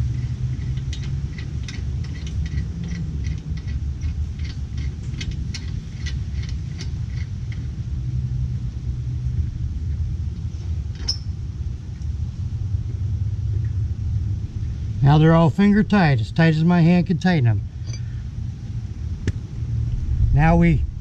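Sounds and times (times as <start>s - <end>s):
lug nuts clicking on wheel studs: 0.0s - 7.7s
steady low rumble: 0.0s - 21.0s.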